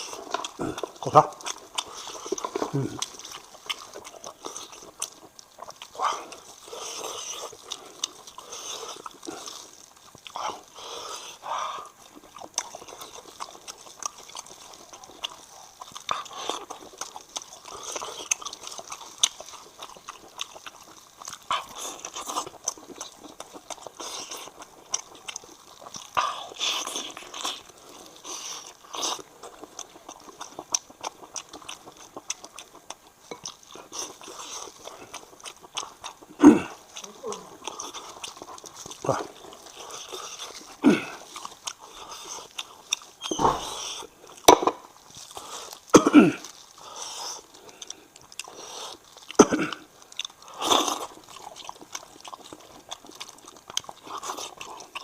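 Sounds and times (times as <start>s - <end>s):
wet chewing and smacking: 0.0s - 55.0s
mouth clicks: 42.6s - 44.8s.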